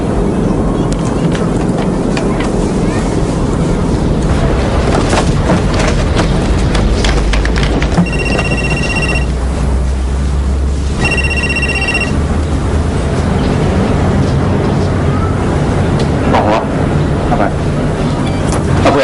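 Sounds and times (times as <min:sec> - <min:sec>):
telephone ringing: 0:08.0 - 0:09.4, 0:11.0 - 0:12.2.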